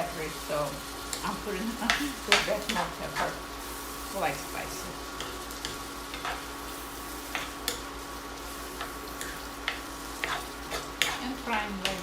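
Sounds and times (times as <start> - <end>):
food sizzling in a frying pan: 0.0 - 12.0
utensil scraping and knocking pan: 9.2 - 11.3.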